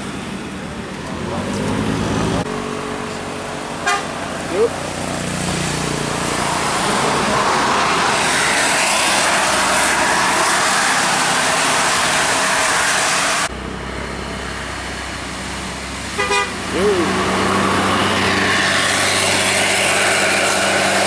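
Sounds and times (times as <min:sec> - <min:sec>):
bus engine drone: 0:00.0 - 0:21.0
tyres hissing on wet road: 0:00.0 - 0:21.0.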